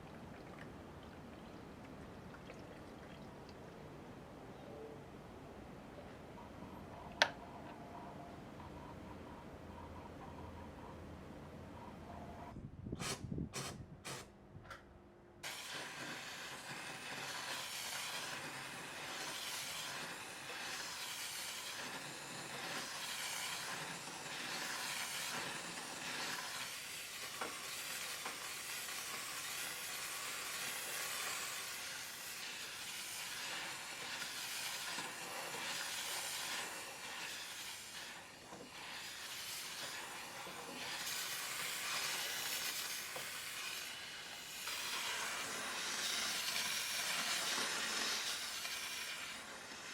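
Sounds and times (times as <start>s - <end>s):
steam cleaner hissing: 15.4s - 49.9s.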